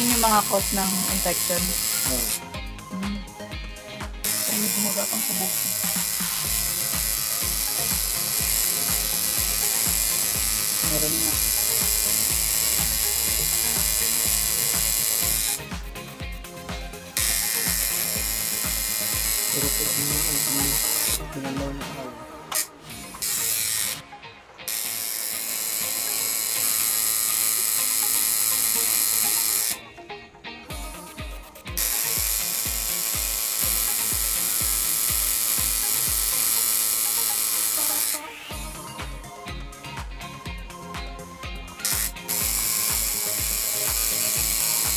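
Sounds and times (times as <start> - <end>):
tattoo machine buzzing: 0.0 - 21.9, 22.5 - 44.9
background music with beat: 0.0 - 44.9
deep kick drum: 2.6 - 4.3.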